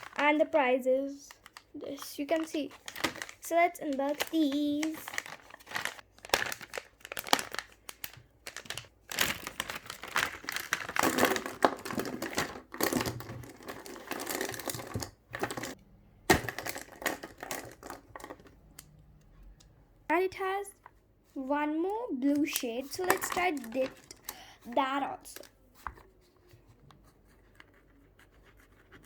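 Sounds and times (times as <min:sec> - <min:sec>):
packaging crinkling: 0:00.0 - 0:00.5, 0:01.3 - 0:18.5, 0:22.5 - 0:24.5.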